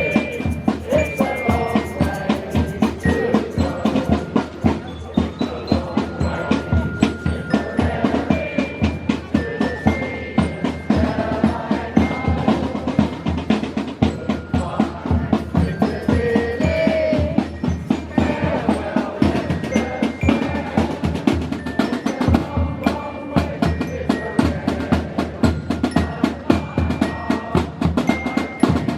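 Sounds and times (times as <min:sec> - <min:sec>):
bright ringing melody: 0:00.0 - 0:13.0
drum beat with rolls: 0:00.0 - 0:28.9.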